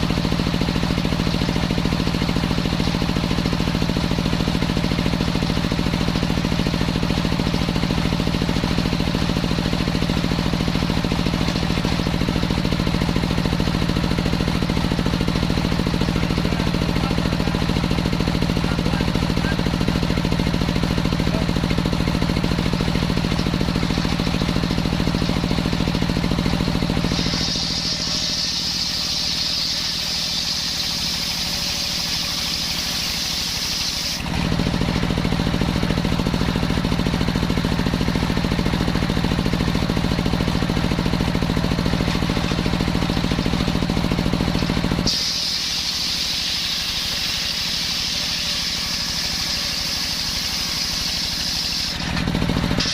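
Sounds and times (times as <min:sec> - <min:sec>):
engine-driven circular saw running: 0:00.0 - 0:52.9
saw blade whining through wood: 0:21.2 - 0:35.4, 0:40.9 - 0:52.9.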